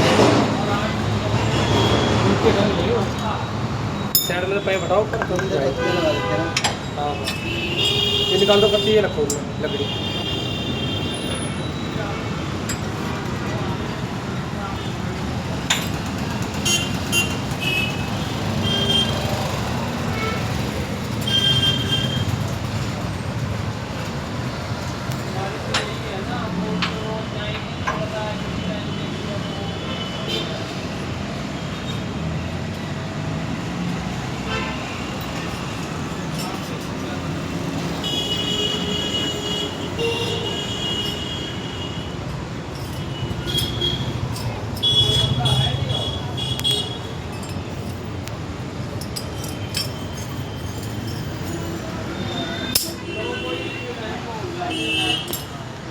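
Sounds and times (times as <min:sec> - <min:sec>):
metal tools clinking: 0:04.0 - 0:05.8, 0:06.6 - 0:09.8, 0:12.6 - 0:13.5, 0:15.5 - 0:17.5, 0:35.1 - 0:39.3, 0:40.0 - 0:41.4, 0:42.5 - 0:53.3, 0:55.2 - 0:55.6
ringing metal tones: 0:04.0 - 0:05.8, 0:48.9 - 0:51.8.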